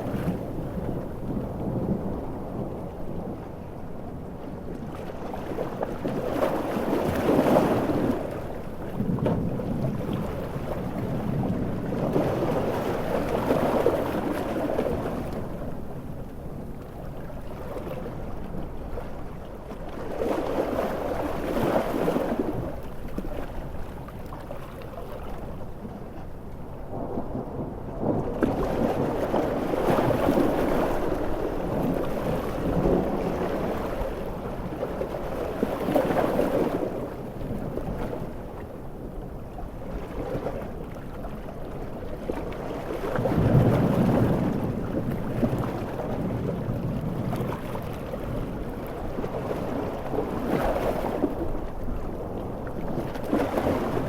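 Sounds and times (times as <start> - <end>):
large waves surging: 0.0 - 54.0
rolling thunder: 26.9 - 33.9, 43.2 - 48.6.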